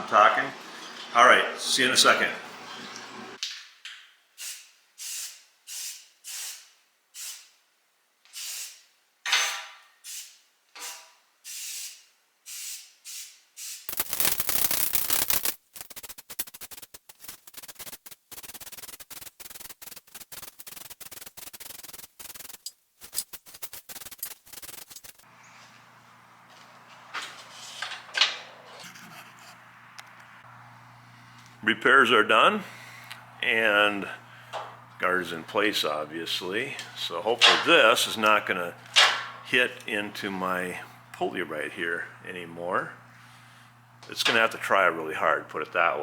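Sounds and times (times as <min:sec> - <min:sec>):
sandblasting gun hissing blasts: 0:04.4 - 0:07.5, 0:08.4 - 0:08.8, 0:10.0 - 0:25.2.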